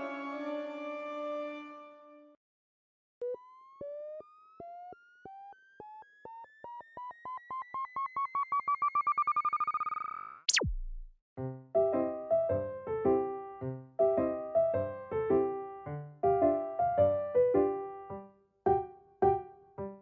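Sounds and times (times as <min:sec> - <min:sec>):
electronic beeps rising in pitch: 0:03.2 - 0:11.1
fast downward pitch sweep: 0:03.8 - 0:11.1
low hum: 0:10.5 - 0:11.1.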